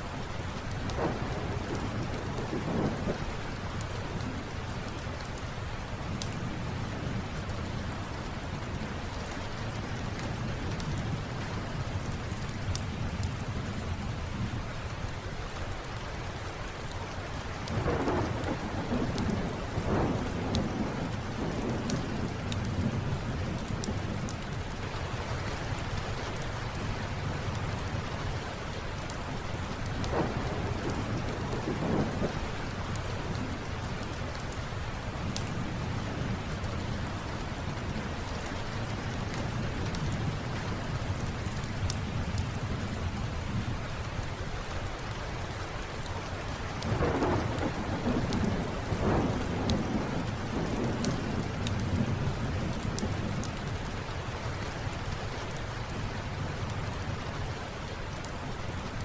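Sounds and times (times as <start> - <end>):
steady rain: 0.0 - 59.0
low rolling thunder: 0.7 - 4.7, 17.7 - 24.7, 29.6 - 38.0, 46.8 - 53.9
wood fire crackling: 16.6 - 59.0.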